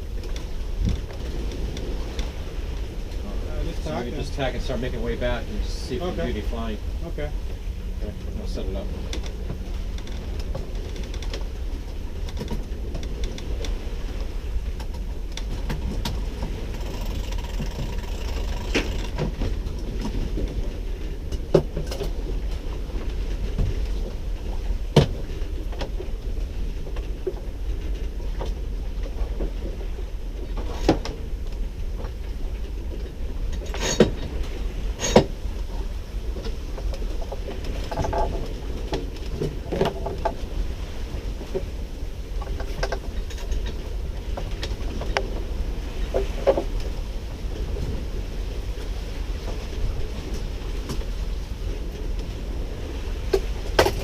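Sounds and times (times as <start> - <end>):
low wind rumble on microphone: 0.0 - 54.0
sharp knocks and clicks: 14.8 - 20.2, 42.4 - 43.8.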